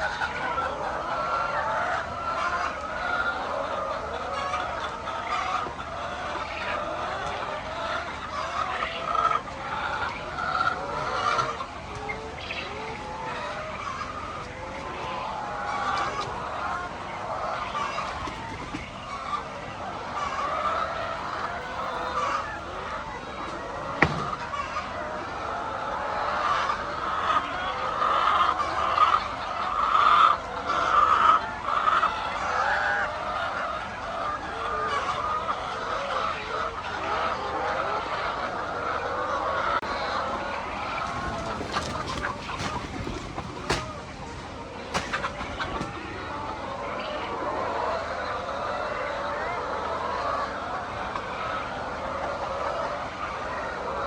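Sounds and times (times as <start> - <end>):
flock of poultry calling: 0.0 - 54.0
hens squawking and cackling: 0.0 - 54.0.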